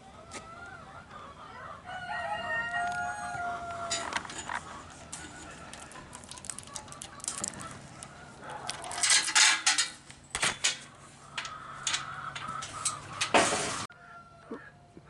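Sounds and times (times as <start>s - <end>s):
chickens and roosters clucking: 0.0s - 15.0s
metallic clanks and rattling: 3.8s - 13.9s.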